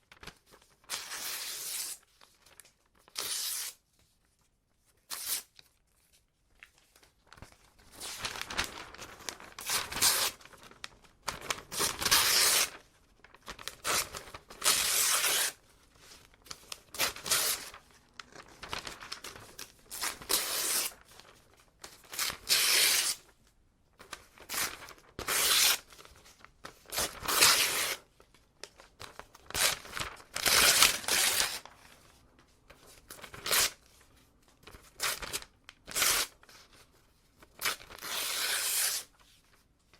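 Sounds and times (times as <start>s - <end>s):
paper tearing: 3.1s - 3.8s, 7.9s - 10.5s, 11.4s - 12.8s, 13.6s - 15.6s, 17.0s - 17.8s, 20.0s - 21.0s, 22.1s - 23.2s, 24.4s - 26.0s, 26.9s - 28.0s, 29.5s - 31.7s, 37.6s - 39.1s
paper crinkling: 5.0s - 23.4s, 24.0s - 39.6s.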